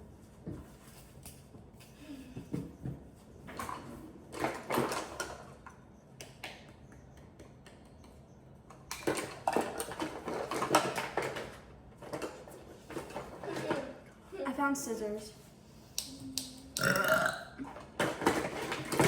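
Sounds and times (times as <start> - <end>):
kitchen things clattering: 9.0 - 14.0.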